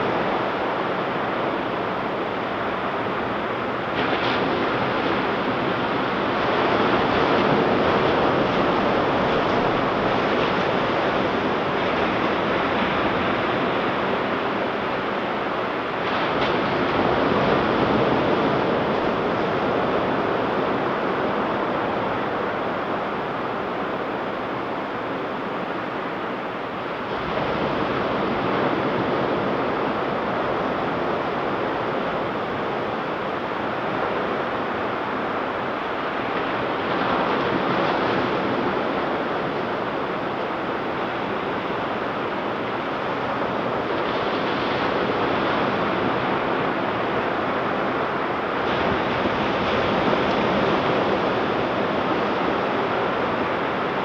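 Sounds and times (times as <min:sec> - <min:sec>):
ocean surf washing on beach: 0:00.0 - 0:54.0.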